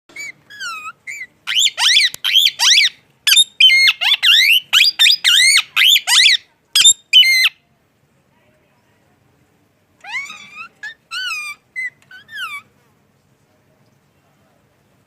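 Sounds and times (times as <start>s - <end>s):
parrot chirping whistles: 0.1s - 7.6s.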